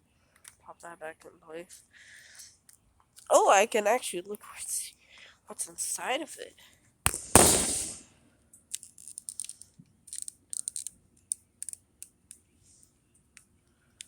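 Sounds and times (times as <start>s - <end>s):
plastic casing clicks and rattles: 8.7s - 12.1s.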